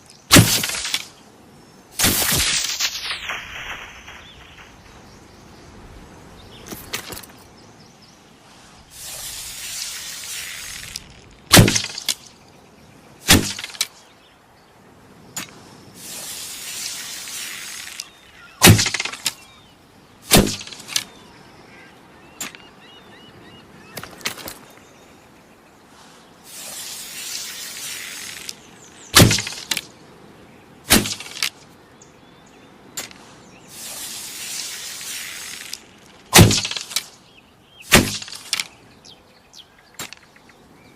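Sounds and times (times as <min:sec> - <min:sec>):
arrow hissing rustle: 0:00.0 - 0:01.2, 0:01.9 - 0:07.5, 0:08.4 - 0:12.4, 0:13.2 - 0:14.1, 0:15.2 - 0:19.5, 0:20.2 - 0:21.2, 0:25.9 - 0:29.9, 0:30.9 - 0:31.7, 0:33.0 - 0:37.2, 0:37.8 - 0:38.8
sharp crack: 0:00.3 - 0:01.2, 0:02.0 - 0:05.1, 0:09.0 - 0:12.4, 0:13.2 - 0:14.0, 0:15.3 - 0:19.5, 0:20.3 - 0:21.2, 0:26.5 - 0:30.0, 0:30.9 - 0:31.7, 0:32.9 - 0:37.2, 0:37.9 - 0:38.8.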